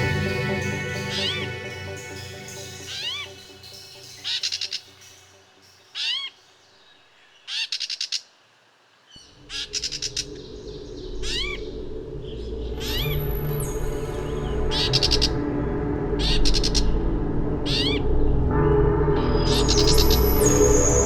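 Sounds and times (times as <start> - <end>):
bird calls and chattering trills: 2.2 - 8.3, 9.2 - 13.8
low steady rush: 9.3 - 21.0.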